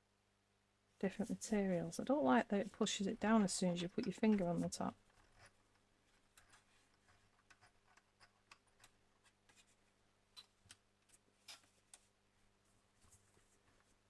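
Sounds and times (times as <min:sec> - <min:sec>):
small clicks and taps: 0:03.9 - 0:09.7.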